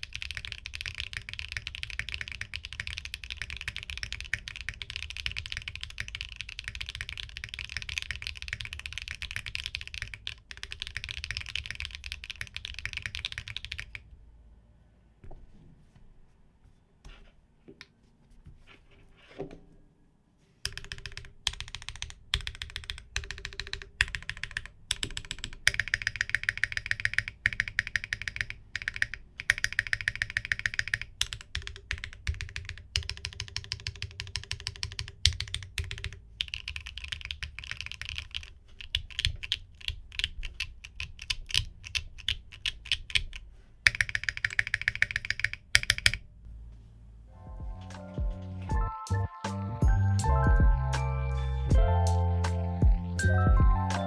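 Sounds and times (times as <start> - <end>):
mechanical keyboard typing: 0.0 - 14.1, 20.6 - 46.4.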